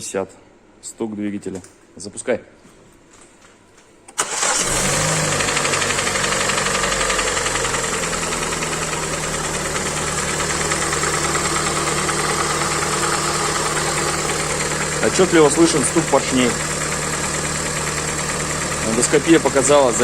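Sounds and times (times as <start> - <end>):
car engine starting and idling: 4.2 - 20.0.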